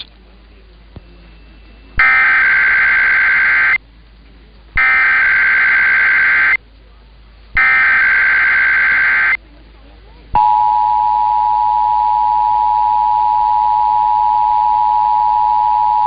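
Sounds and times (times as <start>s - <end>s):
two-tone data warble: 1.1s - 3.8s, 7.6s - 9.4s.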